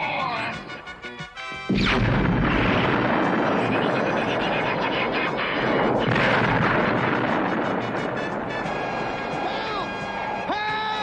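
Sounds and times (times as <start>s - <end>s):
loud explosion: 1.7s - 10.4s
rumble of burning fire: 1.7s - 10.4s.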